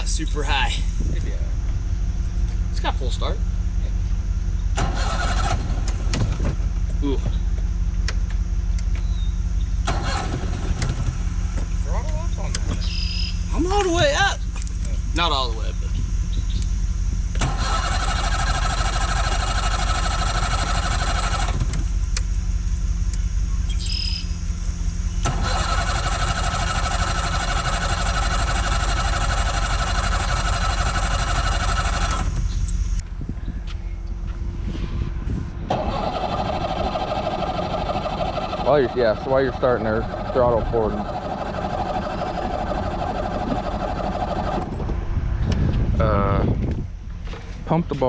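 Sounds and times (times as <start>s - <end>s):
steady low rumble: 0.0s - 17.4s, 27.1s - 48.0s
outboard motor electric starter cranking: 4.8s - 6.2s, 9.8s - 11.6s, 17.4s - 22.3s, 25.2s - 33.0s, 35.7s - 44.7s.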